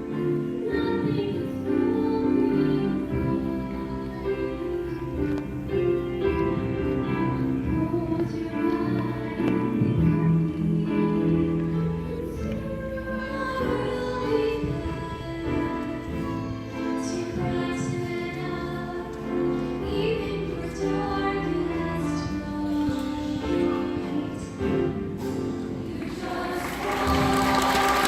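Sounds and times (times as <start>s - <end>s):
instrumental accompaniment: 0.0s - 28.0s
choir singing held notes: 10.5s - 28.0s.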